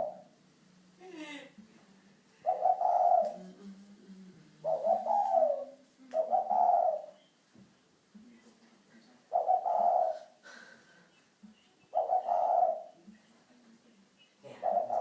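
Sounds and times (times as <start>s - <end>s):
dove cooing: 0.0s - 0.4s, 2.4s - 7.2s, 9.3s - 10.4s, 11.9s - 13.0s, 14.4s - 15.0s.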